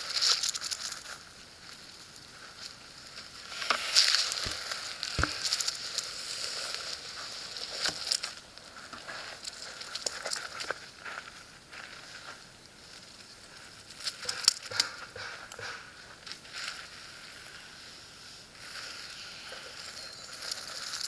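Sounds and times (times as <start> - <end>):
rattlesnake tail rattling: 3.4 - 8.4.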